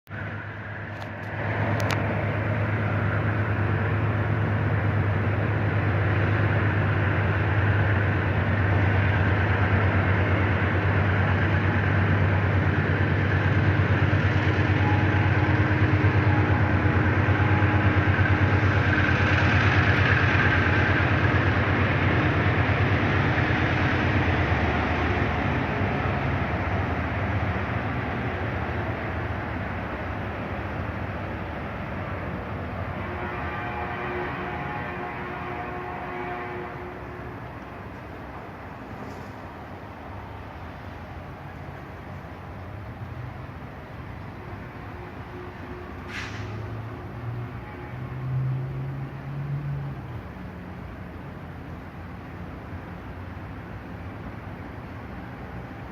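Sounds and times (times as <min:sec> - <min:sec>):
train rumbling past: 0:00.1 - 0:55.9.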